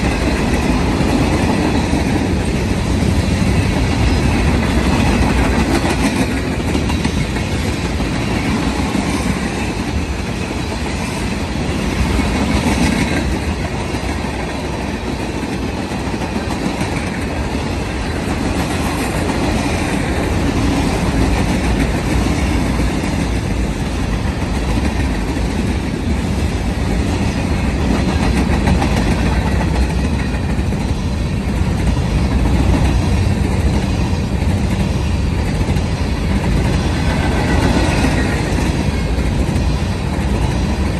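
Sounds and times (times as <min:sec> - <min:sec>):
steel wheels rolling on rail: 0:00.0 - 0:40.9.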